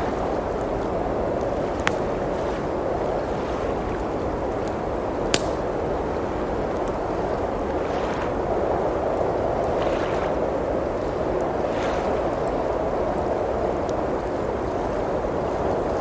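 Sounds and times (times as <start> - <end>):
blizzard wind rushing: 0.0 - 16.0
wood fire crackling: 0.1 - 7.7.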